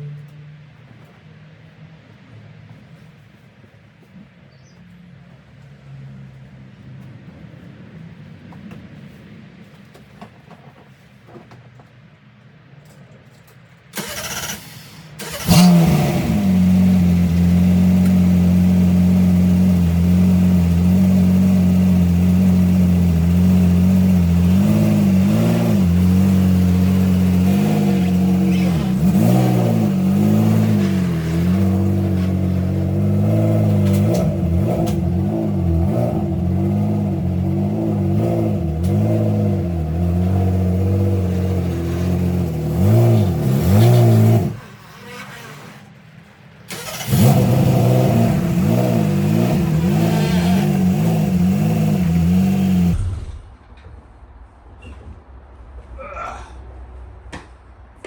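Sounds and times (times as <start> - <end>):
car engine cranking and starting: 13.9 - 53.7
car engine idling: 14.0 - 53.5.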